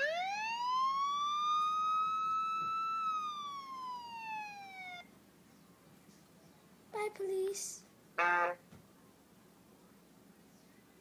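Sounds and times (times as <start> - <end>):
police siren wail: 0.0 - 5.1.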